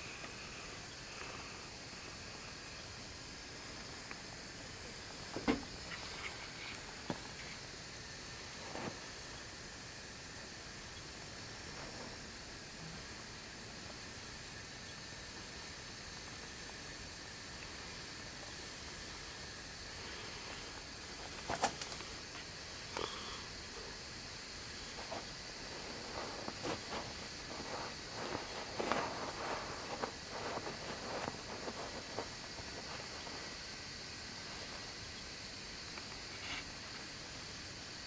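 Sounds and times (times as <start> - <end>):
outdoor background hiss: 0.0 - 38.0
soft clicks and rustles: 20.5 - 23.0.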